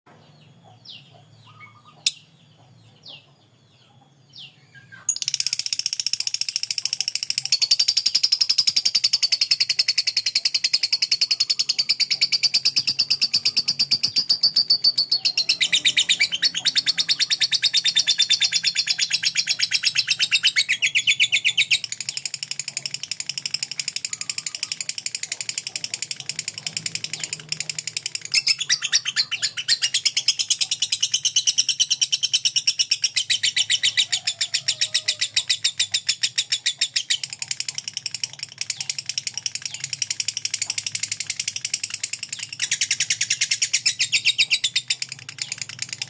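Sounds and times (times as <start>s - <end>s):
bird chattering trill: 0.4s - 46.0s
short bird chirps: 24.1s - 24.8s.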